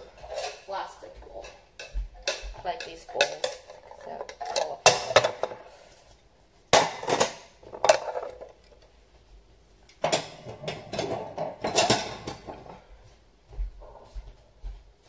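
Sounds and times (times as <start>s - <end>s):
dishes clattering: 0.0s - 5.8s, 6.7s - 8.8s, 10.0s - 12.9s.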